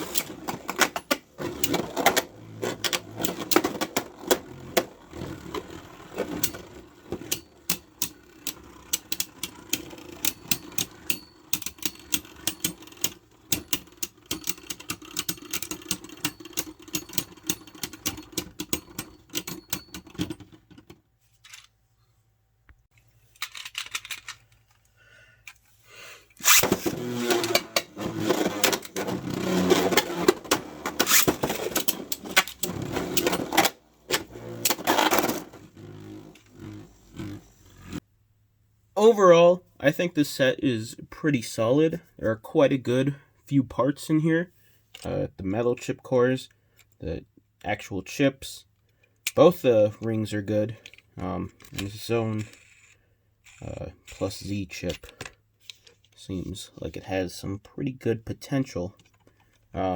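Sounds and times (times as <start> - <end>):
plastic and metal parts rattling: 0.0 - 21.8, 23.0 - 25.7, 26.3 - 38.0, 58.9 - 59.7.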